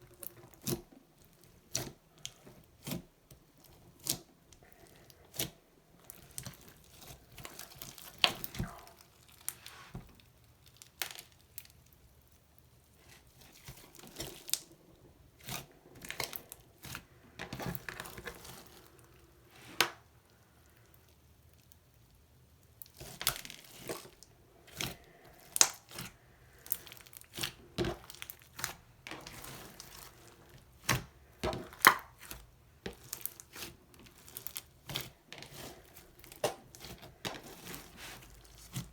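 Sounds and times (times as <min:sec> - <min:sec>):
hands kneading sticky slime: 0:00.0 - 0:38.9
slime popping and crackling: 0:22.8 - 0:38.9.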